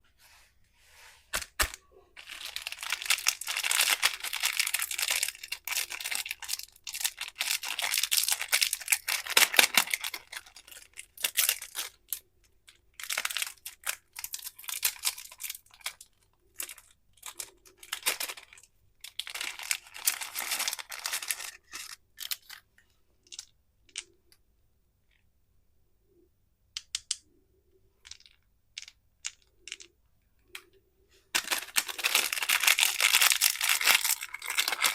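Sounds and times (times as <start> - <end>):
candy wrappers tearing and crinkling: 1.4 - 12.3, 12.9 - 22.6, 31.4 - 34.9.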